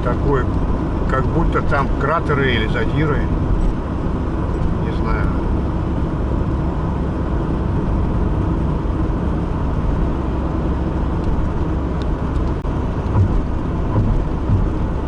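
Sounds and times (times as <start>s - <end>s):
road and tyre noise: 0.0s - 15.0s
wheel bearing humming: 8.4s - 15.0s.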